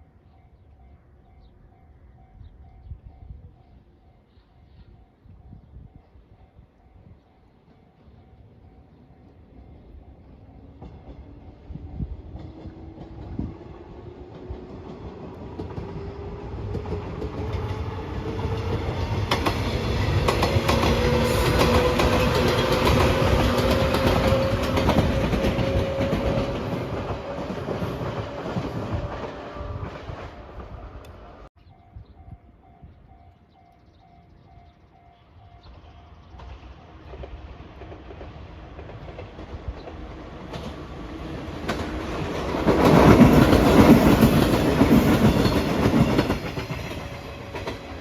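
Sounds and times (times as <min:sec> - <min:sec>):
train wheels clattering: 0:12.2 - 0:30.8, 0:36.3 - 0:48.0.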